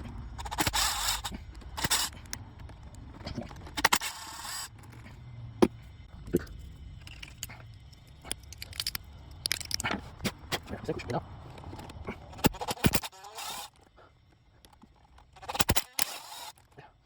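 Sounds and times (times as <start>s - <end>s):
metal tools scraping and clinking: 7.0s - 10.0s.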